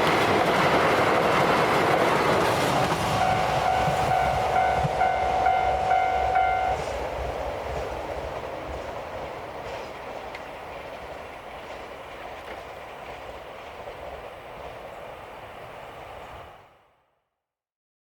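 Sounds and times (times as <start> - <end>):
train running noise: 0.0 - 16.9
train horn blasts: 3.1 - 7.0.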